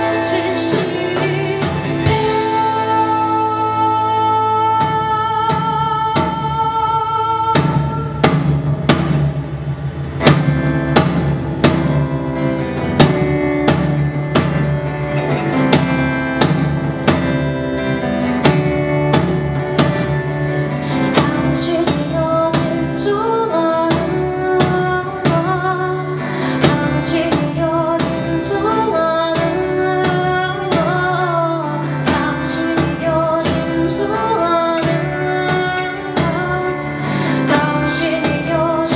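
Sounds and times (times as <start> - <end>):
drum kit beat: 0.0 - 3.4, 7.6 - 25.8
guitars: 0.0 - 38.9.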